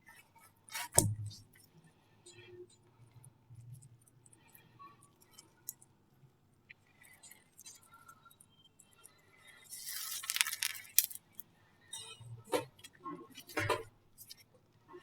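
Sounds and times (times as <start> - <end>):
slime clicks and squishes: 9.8 - 11.2
slime crackling and popping: 9.8 - 11.2.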